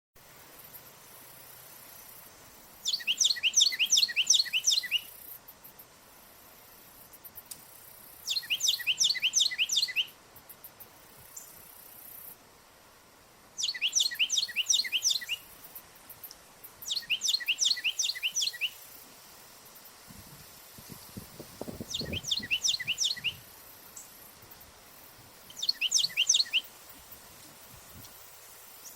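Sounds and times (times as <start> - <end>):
wren calling whistled notes: 2.8 - 5.2, 8.3 - 10.1, 13.6 - 15.5, 16.8 - 18.8, 21.6 - 23.5, 25.5 - 26.7.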